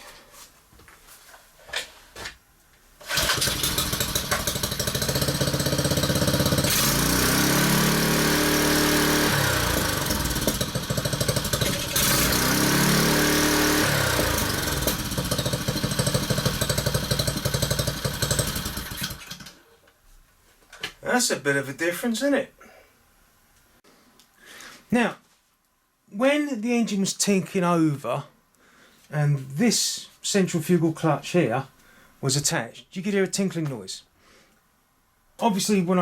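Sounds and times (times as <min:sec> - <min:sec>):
plate compactor engine revving: 0:03.0 - 0:19.5.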